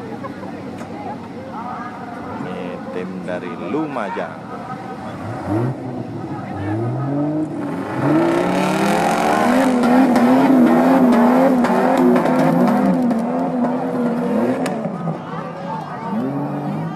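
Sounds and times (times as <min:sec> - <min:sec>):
vehicle engine revving: 0:04.7 - 0:16.9.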